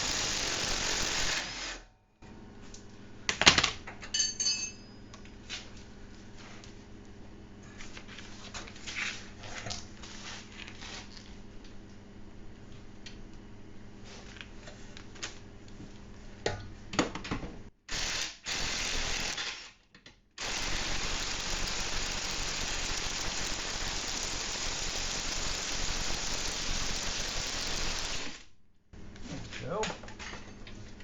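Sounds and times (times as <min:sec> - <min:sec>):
cordless impact wrench running: 0:00.0 - 0:01.8, 0:17.9 - 0:19.5, 0:20.4 - 0:28.4.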